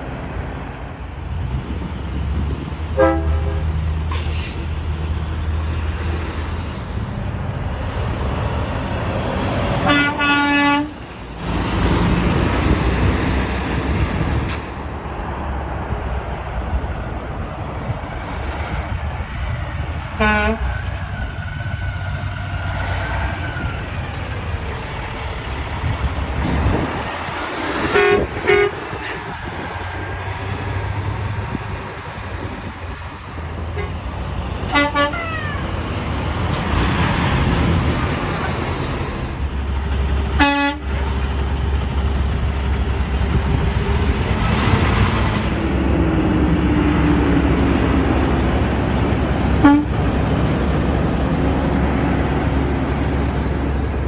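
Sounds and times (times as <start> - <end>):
road traffic passing: 0.0 - 54.0
truck horn blasts: 3.0 - 4.3, 9.8 - 11.0, 20.2 - 20.9, 27.8 - 29.4, 33.7 - 34.0, 34.6 - 35.8, 40.4 - 41.2, 49.4 - 50.1.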